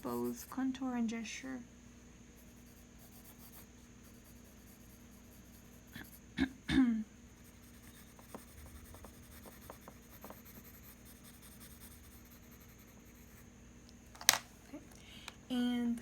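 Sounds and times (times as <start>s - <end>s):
drawing tool scratching paper: 2.4s - 6.2s, 7.4s - 13.4s
person clearing throat: 6.0s - 7.1s.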